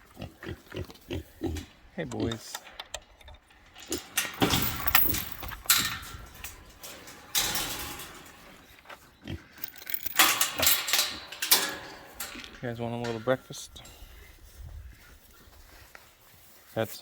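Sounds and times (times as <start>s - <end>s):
pigs grunting: 0.0s - 2.4s, 9.2s - 9.6s.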